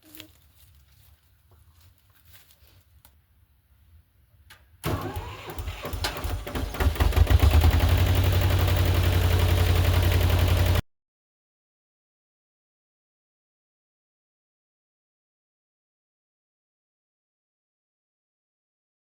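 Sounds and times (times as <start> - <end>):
engine running loudly: 6.7 - 10.8.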